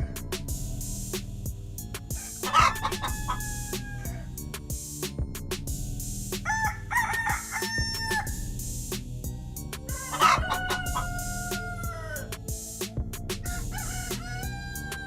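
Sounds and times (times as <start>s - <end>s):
rooster crowing: 2.2s - 4.3s, 6.4s - 8.4s, 9.9s - 12.3s, 13.4s - 15.0s.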